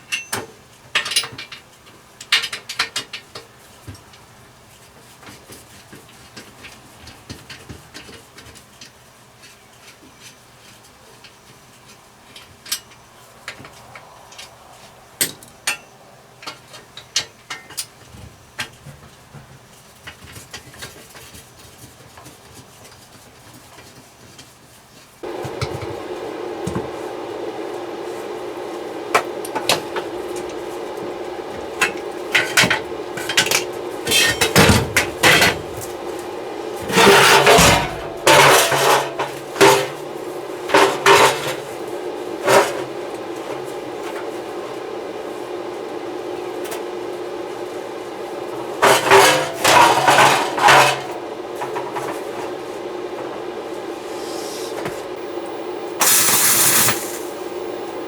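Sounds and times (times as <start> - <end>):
power tool running: 25.2 - 58.0.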